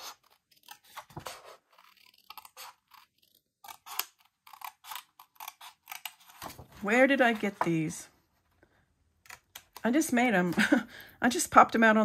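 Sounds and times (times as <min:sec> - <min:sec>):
scissors snipping paper: 0:00.0 - 0:07.7.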